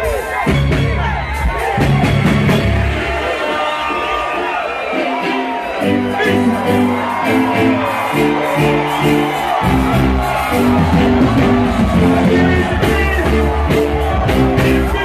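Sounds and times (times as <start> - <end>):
deep bass line: 0.0 - 3.1, 5.9 - 15.0
music with pulsing chords: 5.1 - 15.0.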